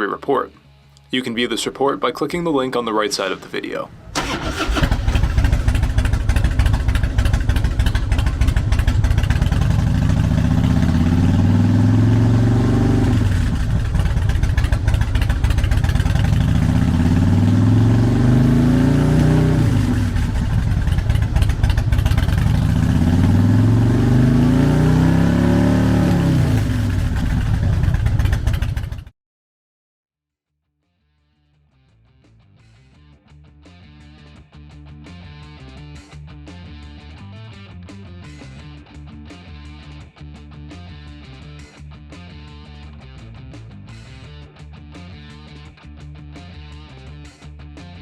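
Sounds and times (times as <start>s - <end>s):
motorcycle engine idling and revving: 3.9s - 29.1s.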